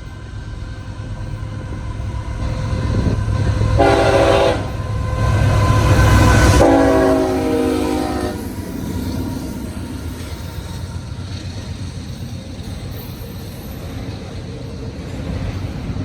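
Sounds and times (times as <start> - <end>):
locomotive engine rumble: 0.0 - 16.0
locomotive air horn: 3.8 - 8.7.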